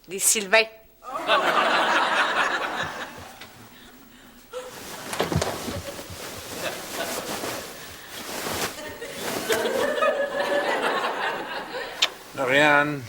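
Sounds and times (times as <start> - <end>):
audience laughter: 1.1 - 3.5, 8.8 - 12.1.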